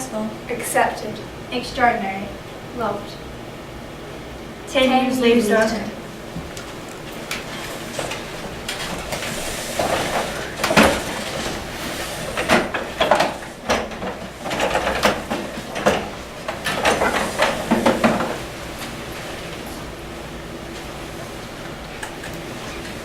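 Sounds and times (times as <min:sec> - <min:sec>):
chairs scraping and knocking on stage: 0:05.6 - 0:19.9.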